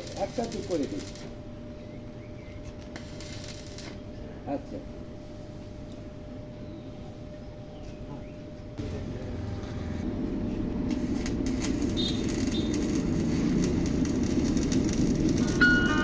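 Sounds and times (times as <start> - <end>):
crackling clicks: 0.0 - 1.3, 2.7 - 4.0, 10.9 - 16.0
vehicle engine running: 8.8 - 16.0.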